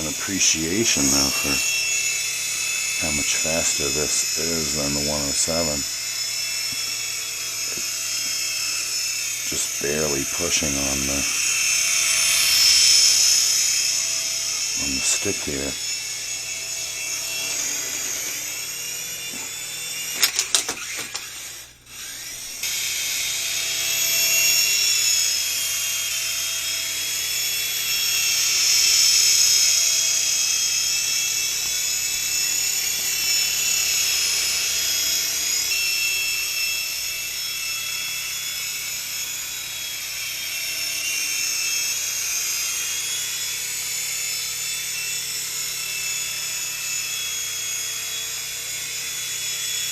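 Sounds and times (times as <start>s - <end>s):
toy helicopter rotors whining: 0.0s - 49.9s
sharp clicks: 20.1s - 22.8s.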